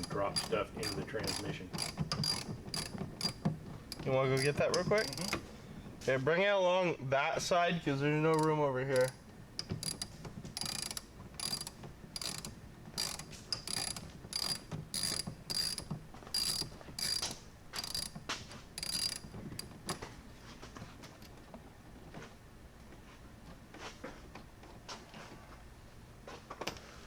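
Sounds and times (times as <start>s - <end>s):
ratchet wrench clicking: 0.0s - 5.4s, 8.3s - 20.1s.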